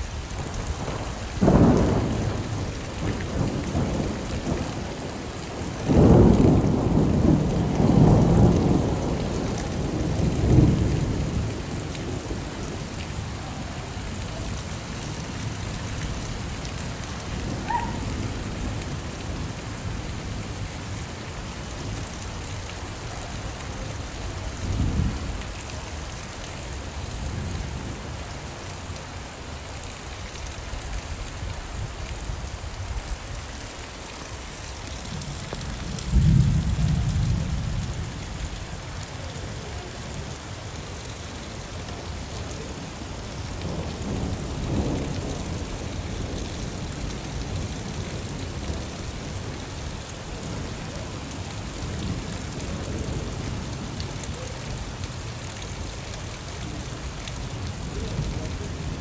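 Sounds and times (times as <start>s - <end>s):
steady rain falling: 0.0s - 59.0s
thunder rumbling: 0.4s - 13.7s, 35.1s - 38.2s.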